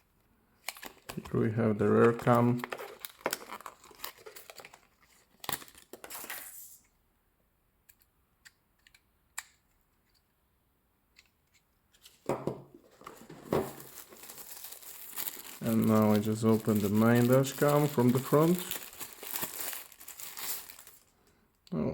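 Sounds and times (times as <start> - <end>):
wrapping crinkling and tearing: 0.6 - 6.6, 12.9 - 21.2.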